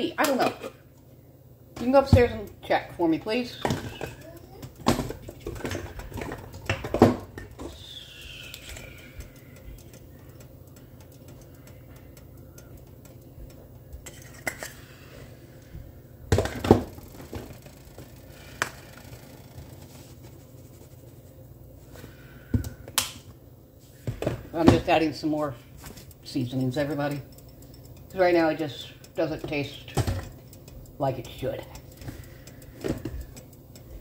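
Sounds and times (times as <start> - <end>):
low hum: 0.8 - 34.0
pots and dishes clattering: 3.6 - 7.7, 14.0 - 14.8.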